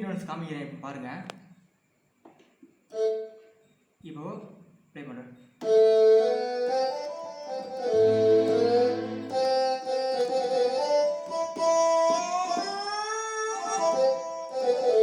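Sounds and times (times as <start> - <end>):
electronic keyboard melody: 5.6 - 15.0.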